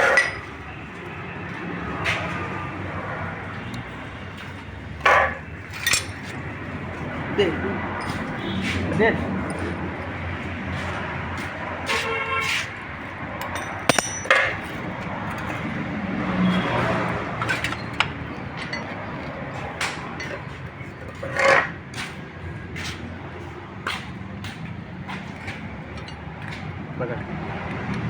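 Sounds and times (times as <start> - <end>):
street traffic noise: 0.0 - 28.0
metal tools clinking: 5.1 - 6.4, 13.4 - 15.6, 17.4 - 21.6, 25.4 - 26.6.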